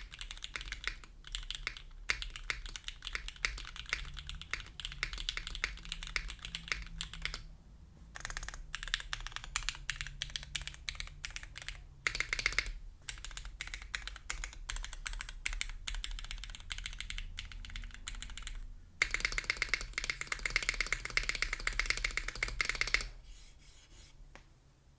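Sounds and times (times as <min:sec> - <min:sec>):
clacky mechanical keyboard typing: 0:00.0 - 0:07.5, 0:08.2 - 0:23.1.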